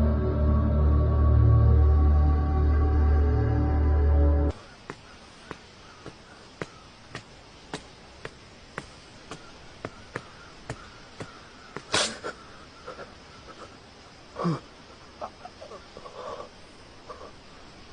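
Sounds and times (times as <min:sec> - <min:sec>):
faint hiss: 0:04.5 - 0:17.9.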